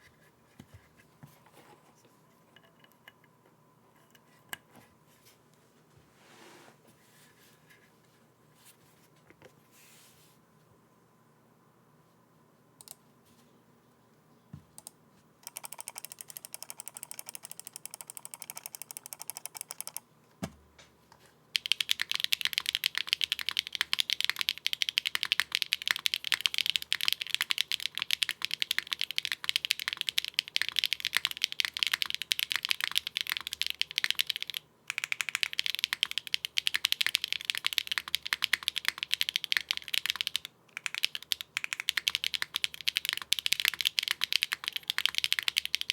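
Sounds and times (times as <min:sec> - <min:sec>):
typing on mechanical keyboard: 0:14.8 - 0:20.0, 0:21.6 - 0:45.9.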